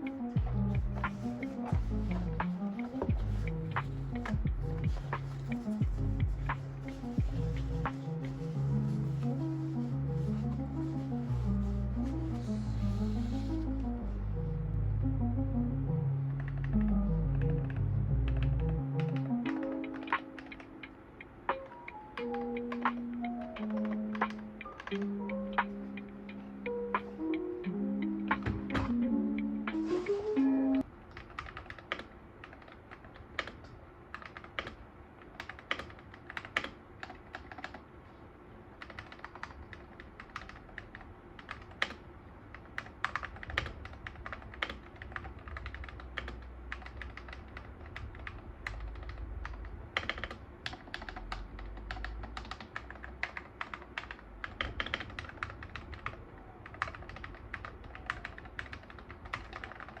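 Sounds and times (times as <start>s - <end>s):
mechanical keyboard typing: 16.3s - 30.0s, 30.8s - 37.9s, 38.7s - 60.0s.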